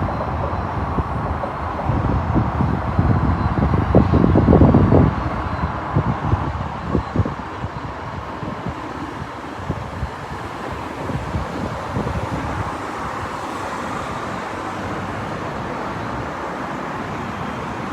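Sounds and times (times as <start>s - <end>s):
train rolling past: 0.0s - 17.9s
wind buffeting microphone: 0.0s - 17.9s.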